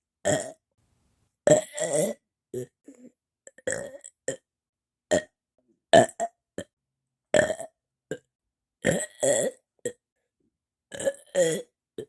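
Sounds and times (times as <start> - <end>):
person burping: 0.2 - 0.6, 1.5 - 4.5, 5.1 - 10.0, 10.9 - 11.8.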